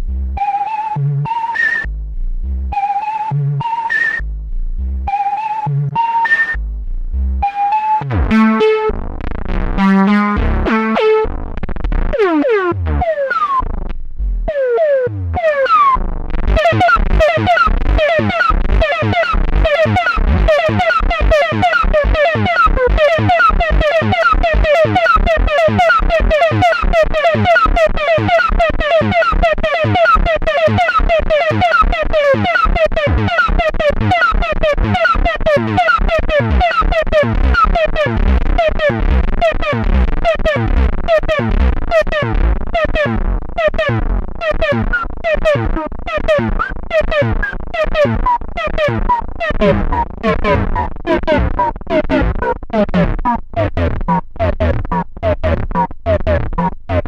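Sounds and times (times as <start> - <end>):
low thumps: 0.0 - 0.4, 1.0 - 3.6, 4.2 - 24.7
synthesizer percussion sequence: 0.0 - 57.0.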